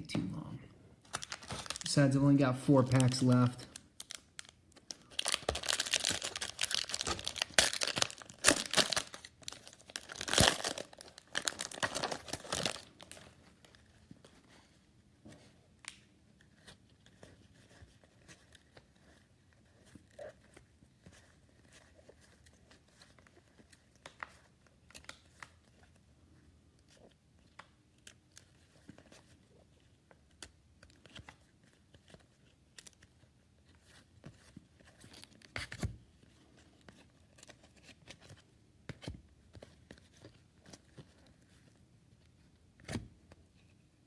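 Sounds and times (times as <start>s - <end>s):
plastic wrapper tearing and crumpling: 1.0s - 2.2s, 2.8s - 13.8s
cards being handled: 1.0s - 26.0s.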